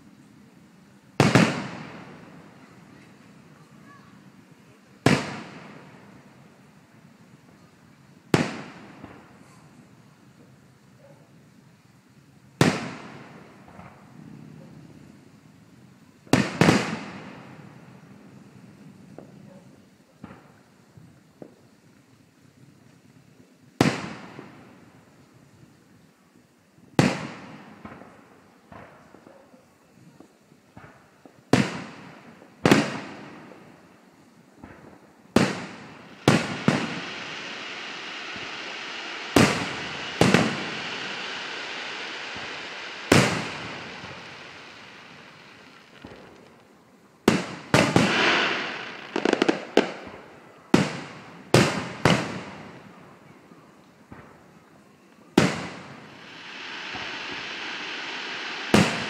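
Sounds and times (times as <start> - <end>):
crackling hiss: 0.0 - 59.0
firework crackles: 0.0 - 59.0
firework shells bursting: 34.6 - 51.0, 55.4 - 59.0.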